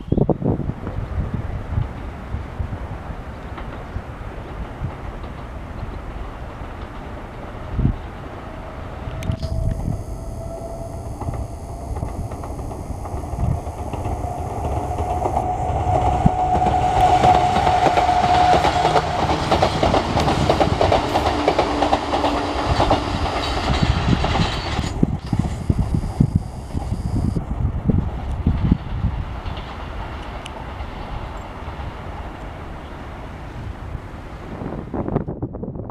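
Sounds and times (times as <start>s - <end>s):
wheels clacking over rail joints: 3.3s - 9.1s, 14.0s - 25.2s, 28.0s - 32.8s
electric train whine: 6.0s - 32.7s.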